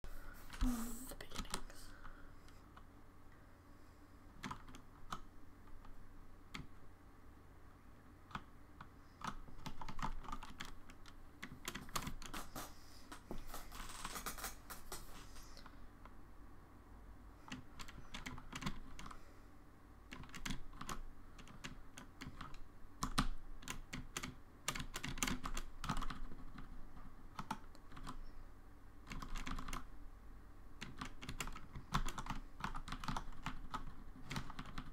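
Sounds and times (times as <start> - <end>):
typing on keyboard: 4.4 - 6.7, 8.3 - 8.5, 9.2 - 15.2, 17.5 - 19.2, 20.1 - 28.2, 29.0 - 29.9, 30.8 - 34.9.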